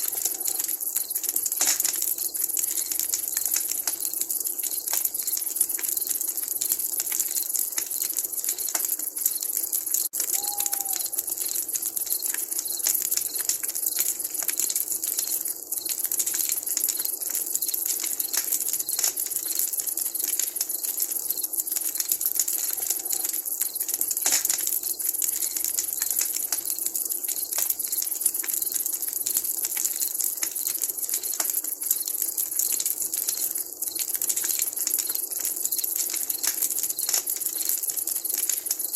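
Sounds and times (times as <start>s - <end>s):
campfire crackling: 0.0s - 38.9s
short note-like call: 10.4s - 11.2s.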